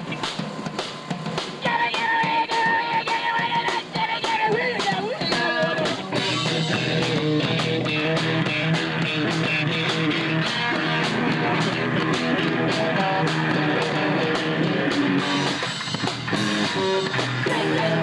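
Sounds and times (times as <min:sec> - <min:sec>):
steady drum beat: 0:00.0 - 0:18.0
electric guitar: 0:04.8 - 0:18.0.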